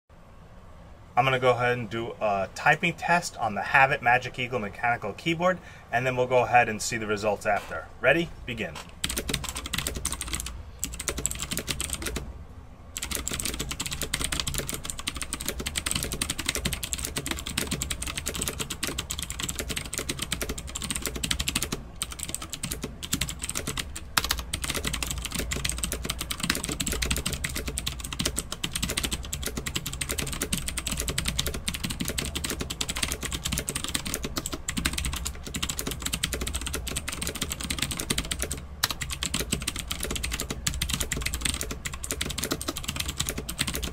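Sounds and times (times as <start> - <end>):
mechanical keyboard typing: 8.8 - 12.2, 13.0 - 43.9.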